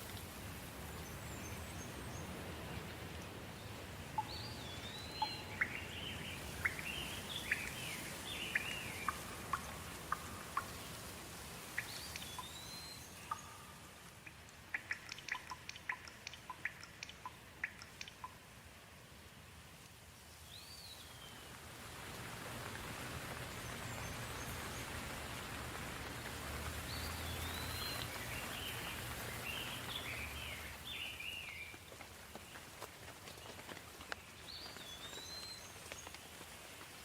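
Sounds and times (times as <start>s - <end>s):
gentle rain hissing: 0.0s - 37.0s
sharp dripping ticks: 1.8s - 18.6s, 26.0s - 37.0s
bird calling and chirping: 4.2s - 10.8s, 11.8s - 18.4s.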